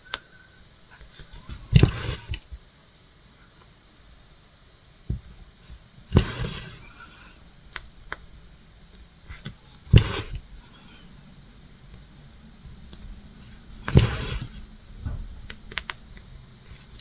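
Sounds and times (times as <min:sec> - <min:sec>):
fabric rustling: 0:05.1 - 0:07.4.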